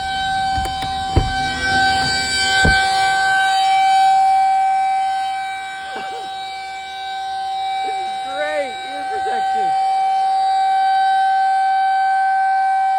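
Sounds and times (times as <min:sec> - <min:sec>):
low thumps: 0:00.0 - 0:03.4
rotating siren steady high tone: 0:00.0 - 0:12.9.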